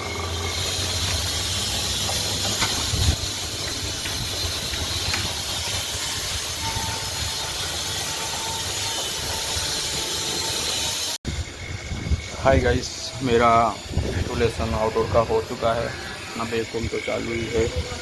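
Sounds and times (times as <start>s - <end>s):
vacuum pump hiss and hum: 0.0s - 18.0s.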